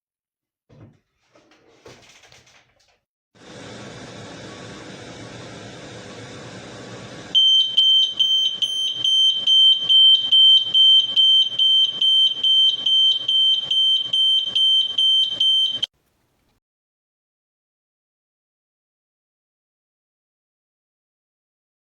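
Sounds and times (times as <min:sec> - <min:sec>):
smoke alarm beeping: 0:07.4 - 0:15.9.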